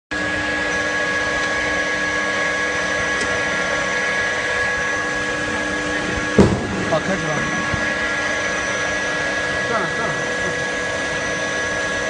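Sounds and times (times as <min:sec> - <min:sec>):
washing machine whirring: 0:00.1 - 0:12.0.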